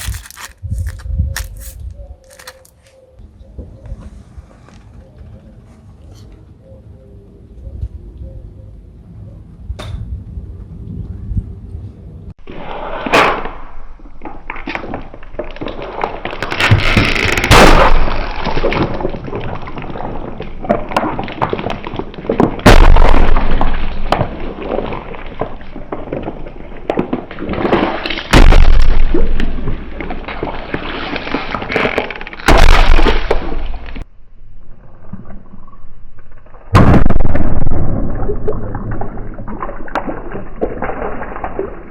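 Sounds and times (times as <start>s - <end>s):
objects crunching under tyre: 0.0s - 2.9s, 14.2s - 34.1s
loud bangs of objects bursting: 16.5s - 18.8s, 20.9s - 24.8s, 26.0s - 29.7s, 32.5s - 33.5s, 36.7s - 38.4s.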